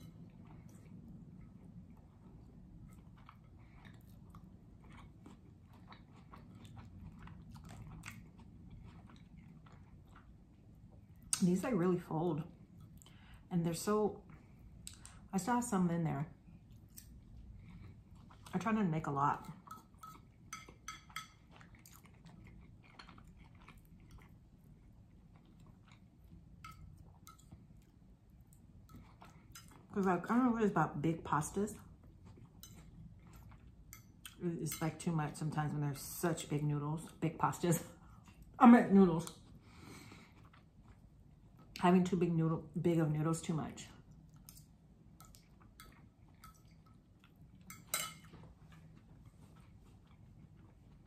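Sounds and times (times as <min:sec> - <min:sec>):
person chewing food: 0:00.0 - 0:11.4, 0:16.5 - 0:18.6, 0:19.4 - 0:30.0, 0:31.8 - 0:34.4, 0:39.3 - 0:41.8, 0:44.1 - 0:51.0.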